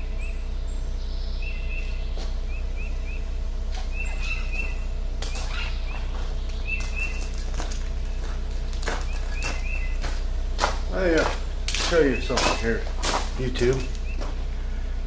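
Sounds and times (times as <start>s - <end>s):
small bird chirping: 0.0s - 10.1s, 13.5s - 14.4s
steady low hum: 0.0s - 15.0s.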